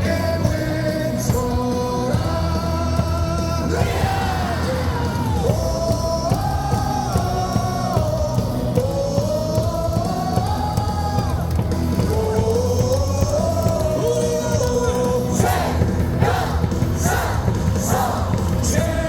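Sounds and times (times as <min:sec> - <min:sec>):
fans yelling: 0:00.0 - 0:19.0
stadium cheer music over loudspeakers: 0:00.0 - 0:19.0.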